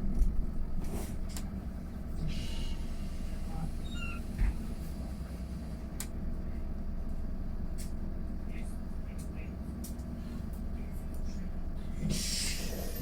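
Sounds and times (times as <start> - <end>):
electric bus humming: 0.0 - 13.0.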